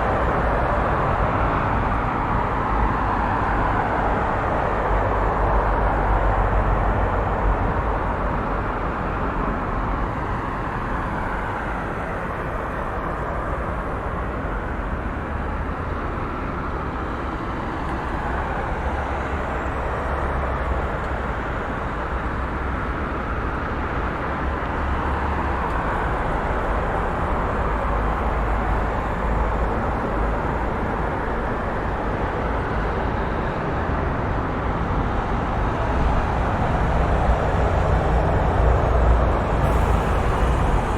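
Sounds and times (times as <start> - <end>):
highway traffic: 0.0 - 40.9.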